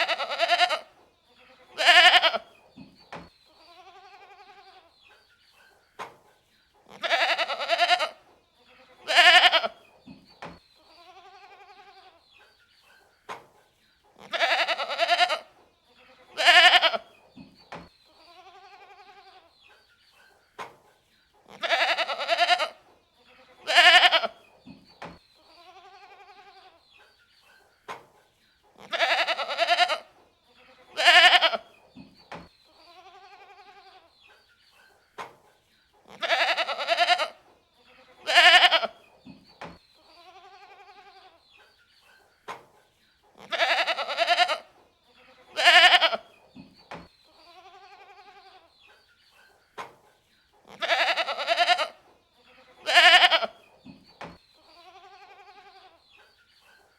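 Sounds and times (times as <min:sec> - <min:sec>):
goats bleating: 0:00.0 - 0:02.5, 0:03.6 - 0:04.9, 0:06.9 - 0:08.2, 0:08.8 - 0:09.8, 0:11.0 - 0:12.2, 0:14.2 - 0:17.1, 0:18.2 - 0:19.5, 0:21.5 - 0:22.8, 0:23.4 - 0:24.4, 0:25.6 - 0:26.8, 0:28.8 - 0:31.7, 0:32.8 - 0:34.1, 0:36.1 - 0:39.0, 0:40.2 - 0:41.4, 0:43.4 - 0:46.3, 0:47.4 - 0:48.7, 0:50.7 - 0:53.6, 0:54.7 - 0:56.0.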